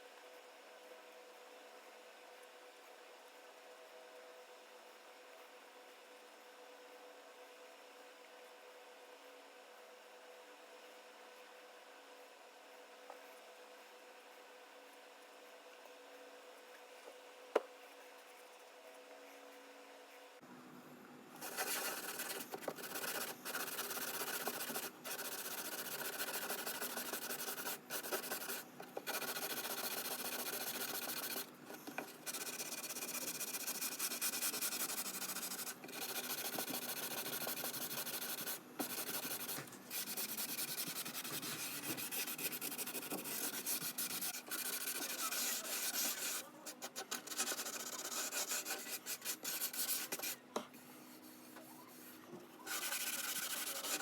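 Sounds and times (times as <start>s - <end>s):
sanding wood: 21.4s - 50.3s, 52.7s - 54.0s.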